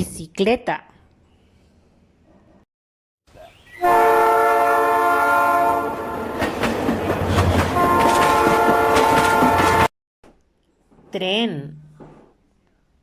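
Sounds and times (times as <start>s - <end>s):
train horn chord: 3.8s - 6.4s, 7.7s - 9.9s
train wheels clattering over rails: 6.3s - 9.9s.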